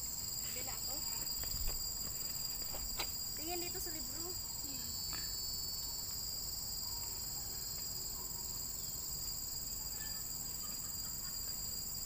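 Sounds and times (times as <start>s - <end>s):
shrill insect chorus: 0.0s - 12.0s.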